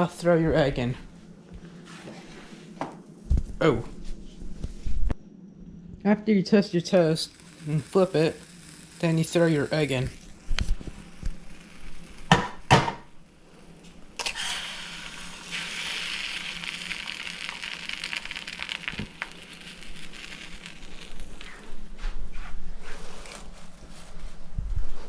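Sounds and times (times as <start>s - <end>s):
egg sizzling in frying pan: 7.2s - 21.7s.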